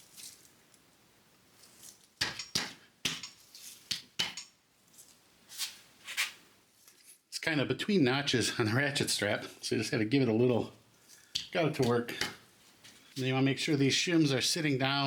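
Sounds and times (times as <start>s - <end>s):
metallic clinks and knocks: 2.2s - 3.6s.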